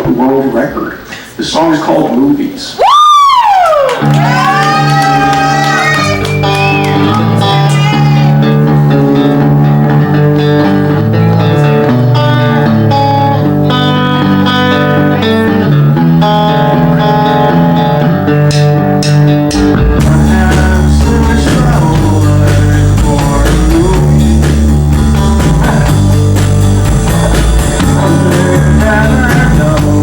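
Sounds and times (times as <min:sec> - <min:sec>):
electric guitar chords: 0:04.0 - 0:30.0.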